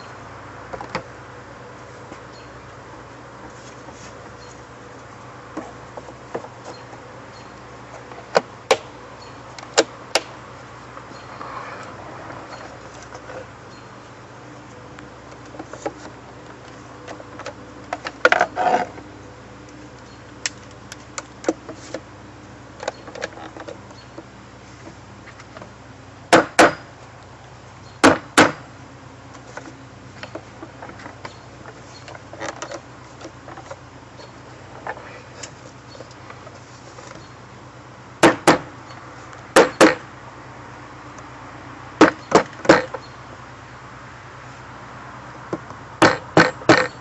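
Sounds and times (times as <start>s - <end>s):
steady low hum: 0.0s - 47.0s
clicks and knocks of handling parts: 22.8s - 25.7s, 29.3s - 37.2s
loud sharp knocks: 26.3s - 26.9s, 28.0s - 28.6s, 38.2s - 38.7s, 39.6s - 40.0s, 46.0s - 47.0s.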